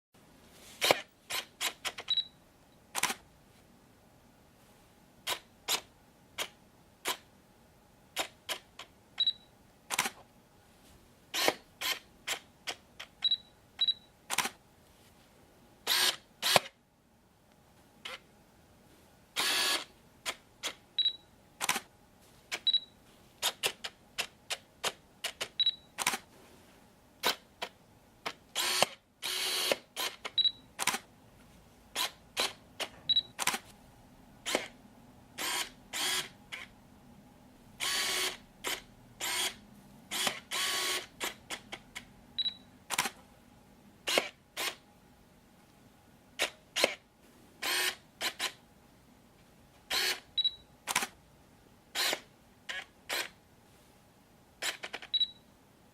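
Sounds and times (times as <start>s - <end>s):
camera shutter clicks: 0.8s - 2.1s, 3.0s - 3.2s, 9.9s - 10.2s, 14.3s - 14.6s, 15.9s - 16.7s, 21.6s - 21.9s, 23.4s - 26.3s, 28.6s - 31.1s, 32.0s - 33.6s, 34.4s - 34.7s, 37.8s - 41.8s, 42.9s - 43.2s, 44.1s - 44.8s, 46.4s - 47.0s, 49.9s - 50.2s, 50.9s - 51.2s, 52.0s - 53.4s, 54.6s - 55.1s
camera lens focusing whirs: 0.8s - 2.2s, 2.9s - 3.2s, 5.2s - 7.3s, 8.2s - 8.9s, 9.9s - 10.2s, 11.3s - 13.1s, 14.3s - 14.6s, 15.8s - 16.8s, 19.4s - 20.8s, 21.6s - 21.9s, 22.5s - 22.8s, 23.4s - 26.3s, 27.2s - 31.1s, 31.9s - 33.8s, 34.4s - 34.8s, 35.4s - 36.7s, 37.8s - 42.1s, 42.9s - 43.2s, 44.0s - 44.8s, 46.4s - 47.0s, 47.6s - 48.6s, 49.9s - 51.2s, 51.9s - 53.4s, 54.6s - 55.4s
short high camera beep: 2.0s - 2.4s, 21.0s - 21.2s, 22.6s - 23.0s, 30.4s - 30.7s, 33.1s - 33.5s, 42.4s - 42.7s, 50.0s - 50.6s, 55.1s - 55.5s.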